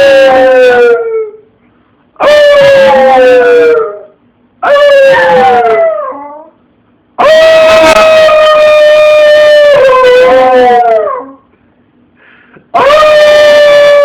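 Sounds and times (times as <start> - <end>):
dog howling: 0.0 - 1.4, 2.2 - 6.6, 7.2 - 11.4, 12.8 - 14.0.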